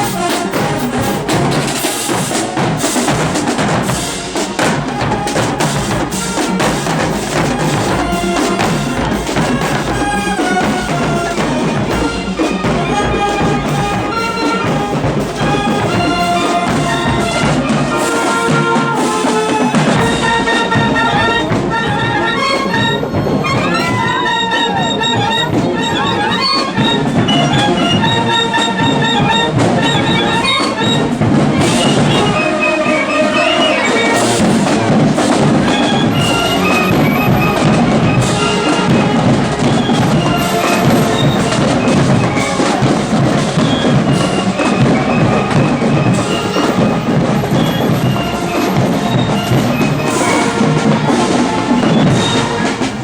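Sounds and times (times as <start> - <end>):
bass drums beating: 0.0 - 32.5, 34.3 - 53.0
brass horns playing: 0.0 - 53.0.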